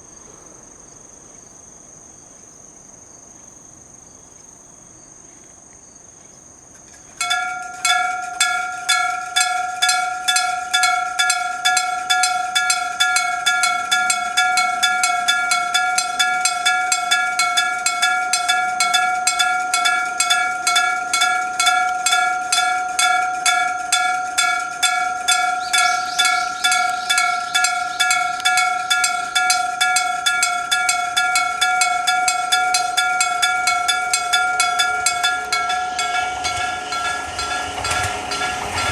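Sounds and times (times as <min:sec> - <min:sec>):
insects chirping: 0:00.0 - 0:38.9
level-crossing bell clanging: 0:07.1 - 0:38.9.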